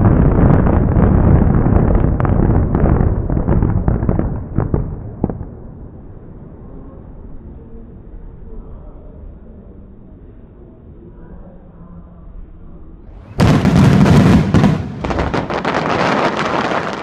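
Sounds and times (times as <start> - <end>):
fireworks bangs and crackles: 0.0 - 6.6, 13.2 - 17.0
low rumble of fireworks: 0.0 - 17.0.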